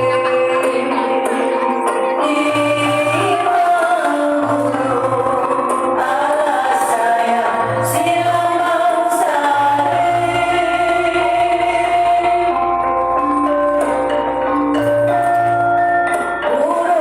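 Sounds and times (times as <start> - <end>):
metallophones ringing: 10.0 - 17.0
wavering melody line: 10.1 - 17.0.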